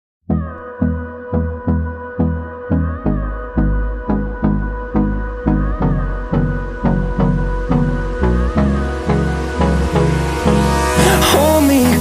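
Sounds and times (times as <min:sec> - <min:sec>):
sustained synth chords: 0:00.3 - 0:12.0
steady beat: 0:10.4 - 0:12.0.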